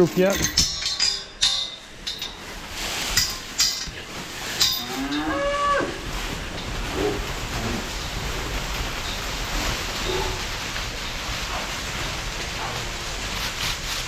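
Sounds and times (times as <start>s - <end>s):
background noise: 0.0s - 14.0s
calf mooing: 4.7s - 6.0s.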